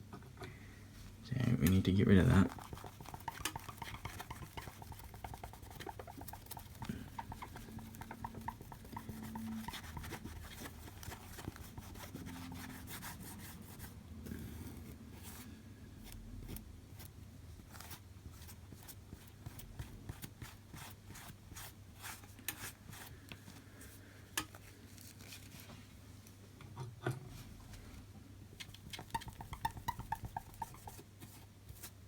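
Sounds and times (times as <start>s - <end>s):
cloth rubbing on screen: 2.3s - 15.5s, 28.9s - 32.0s.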